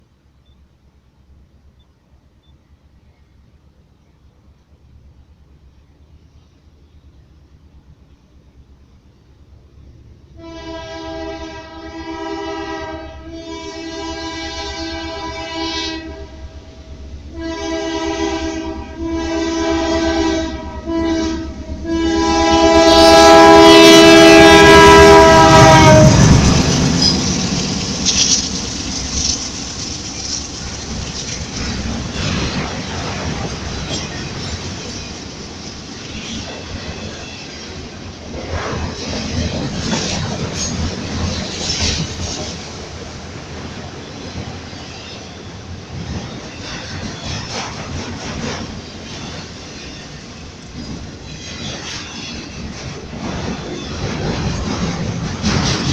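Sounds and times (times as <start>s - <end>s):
train wagons rumbling: 0.0s - 55.9s
locomotive air horn blasts: 10.4s - 16.7s, 17.3s - 26.5s
wheel clickety-clack: 26.2s - 35.3s, 45.9s - 55.9s.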